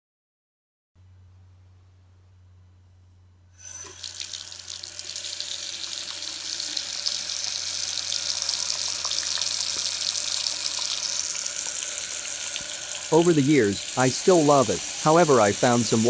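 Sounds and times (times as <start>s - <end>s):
faucet turned on: 3.6s - 16.0s
water running into sink: 3.6s - 16.0s.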